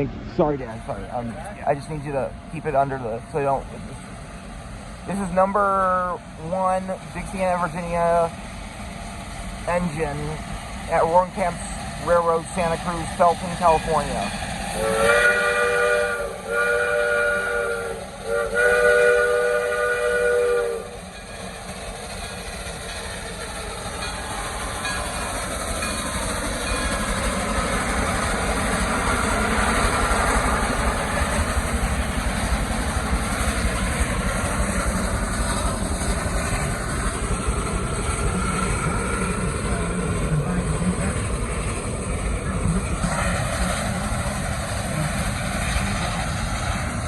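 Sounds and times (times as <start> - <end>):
train rumbling on rails: 0.0 - 47.0
steam whistle chord: 14.7 - 21.0.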